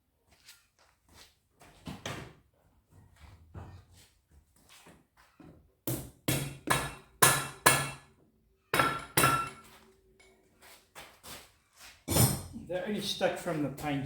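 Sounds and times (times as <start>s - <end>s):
hammer knocking on metal: 8.8s - 9.6s.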